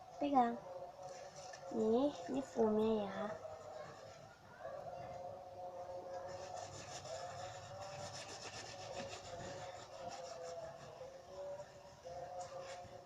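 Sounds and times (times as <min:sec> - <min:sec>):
utensil stirring soap foam: 0:06.0 - 0:13.0.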